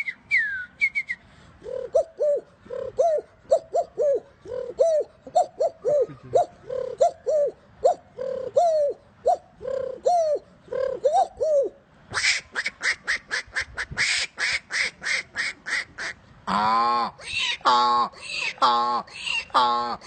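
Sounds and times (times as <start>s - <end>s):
man imitating dove cooing: 1.6s - 12.3s, 16.5s - 20.0s
man imitating quacking calls: 12.1s - 20.0s.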